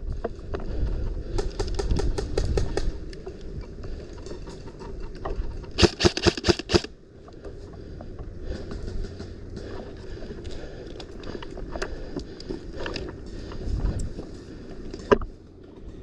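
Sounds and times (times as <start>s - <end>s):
airsoft gun shots: 5.8s - 6.9s.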